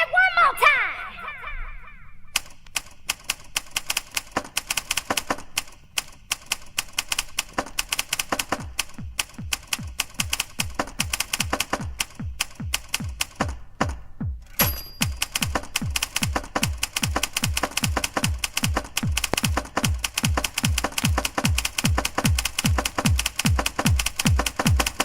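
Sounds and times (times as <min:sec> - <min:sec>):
typewriter keys clacking: 0:02.4 - 0:13.6, 0:14.4 - 0:25.0
low thumping beat: 0:07.6 - 0:14.5, 0:15.1 - 0:25.0.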